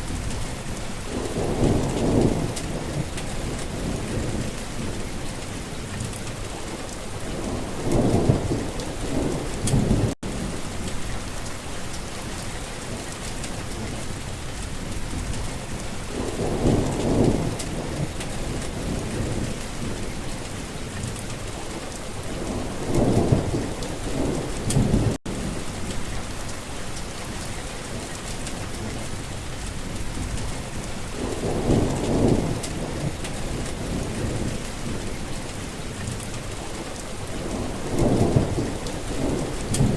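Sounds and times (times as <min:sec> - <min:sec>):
low thunder rolls: 0:00.0 - 0:05.2, 0:07.2 - 0:11.4, 0:14.8 - 0:20.2, 0:22.2 - 0:26.5, 0:29.8 - 0:35.3, 0:36.7 - 0:39.9
steady rain: 0:00.0 - 0:39.9.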